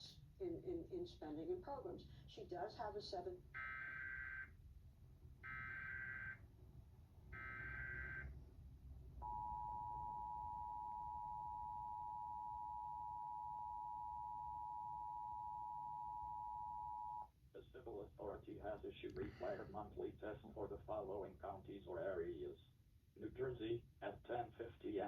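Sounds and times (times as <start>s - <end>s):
two-tone attention signal: 9.2s - 17.2s.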